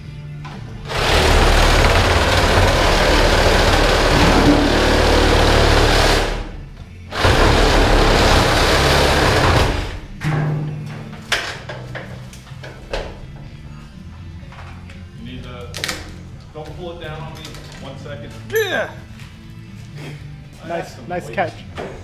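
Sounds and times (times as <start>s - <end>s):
power tool cutting metal pipe: 0.9s - 10.0s.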